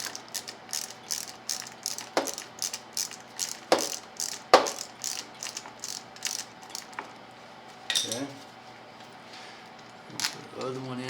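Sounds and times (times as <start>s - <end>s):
socket ratchet clicking: 0.0s - 7.0s.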